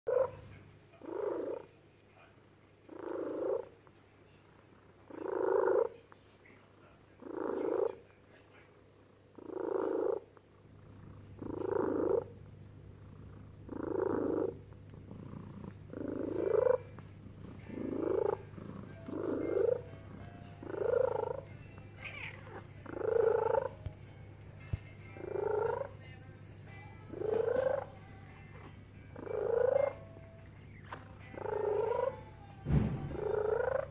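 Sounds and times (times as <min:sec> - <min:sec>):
cat cooing growl: 0:00.1 - 0:00.4, 0:01.0 - 0:01.7, 0:02.9 - 0:03.8, 0:05.0 - 0:06.0, 0:07.2 - 0:08.0, 0:09.4 - 0:10.3, 0:11.3 - 0:12.4, 0:13.6 - 0:23.9, 0:25.1 - 0:26.0, 0:26.9 - 0:33.9.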